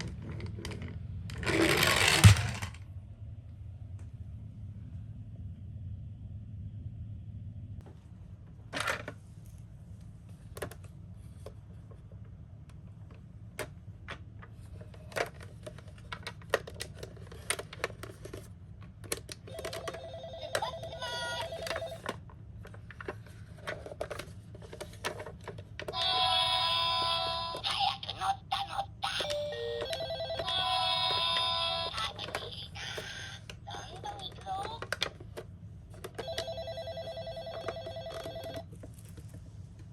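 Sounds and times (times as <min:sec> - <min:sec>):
toys clicking and clattering: 0:00.0 - 0:02.8, 0:14.8 - 0:36.8
steady low hum: 0:00.0 - 0:16.2.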